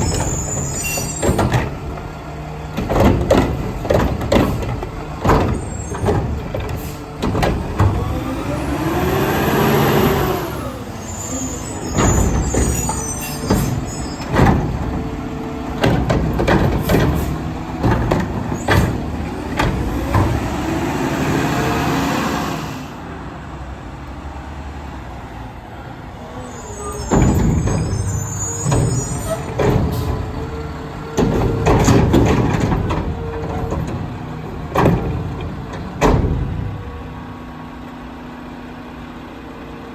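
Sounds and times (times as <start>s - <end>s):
metallic clanks and bangs: 0.0s - 8.2s, 11.8s - 20.6s, 27.0s - 37.0s
garbage truck engine revving: 0.0s - 23.0s.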